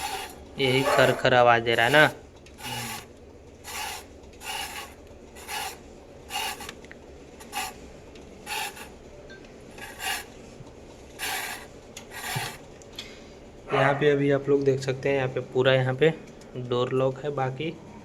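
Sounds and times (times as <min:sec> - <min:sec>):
washing machine drum grating: 0:00.0 - 0:06.7, 0:07.4 - 0:07.8, 0:08.4 - 0:09.0, 0:09.7 - 0:10.3, 0:11.2 - 0:12.6.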